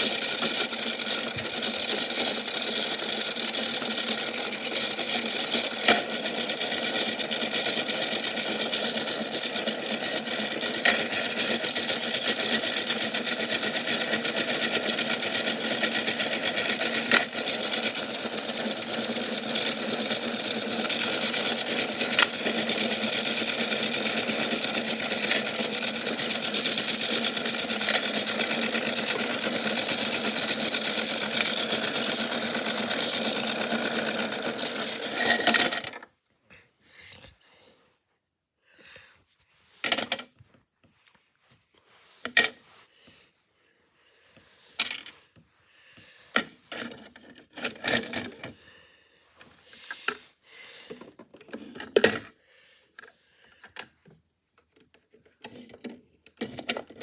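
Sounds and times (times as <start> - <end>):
washing machine with rock: 0.0 - 36.2, 44.6 - 48.8, 53.0 - 57.0.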